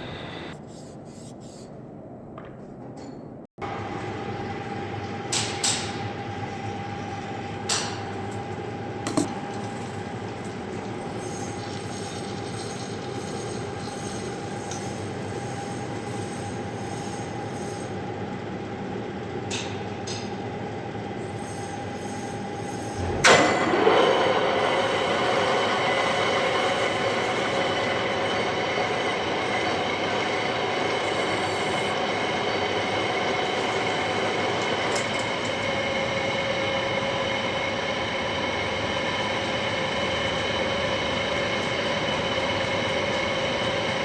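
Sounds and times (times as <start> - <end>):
lathe whining: 6.0 - 18.0, 21.2 - 44.0
tool scraping metal: 9.1 - 17.9, 24.6 - 36.4, 39.2 - 44.0
tool screeching on metal: 10.7 - 18.0, 24.7 - 36.3.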